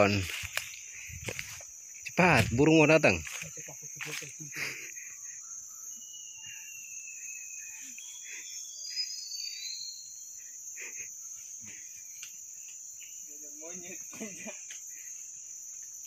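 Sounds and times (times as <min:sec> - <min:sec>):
insects droning: 0:00.0 - 0:16.0
bird whistling: 0:05.7 - 0:10.2.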